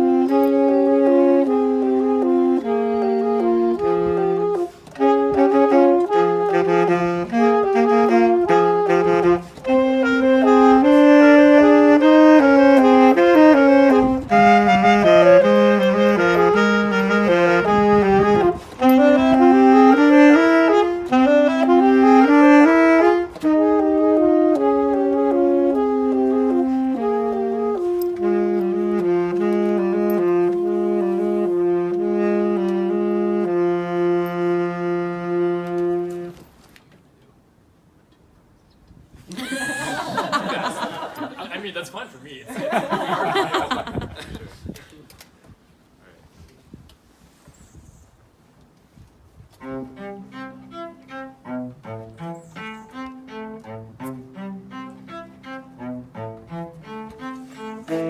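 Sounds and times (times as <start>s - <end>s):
saxophone solo melody: 0.0s - 36.5s, 49.6s - 58.0s.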